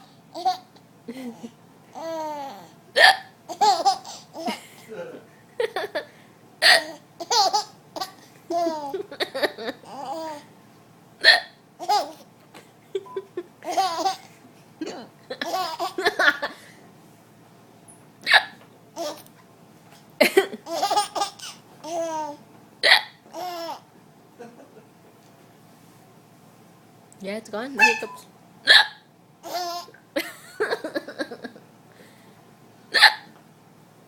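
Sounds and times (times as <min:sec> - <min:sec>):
person hiccuping: 0:03.0 - 0:03.3, 0:11.2 - 0:11.6, 0:22.8 - 0:23.2, 0:27.8 - 0:29.0, 0:33.0 - 0:33.3
laughter: 0:05.6 - 0:06.1, 0:08.7 - 0:09.8, 0:12.8 - 0:13.6, 0:24.4 - 0:25.0, 0:30.2 - 0:31.7.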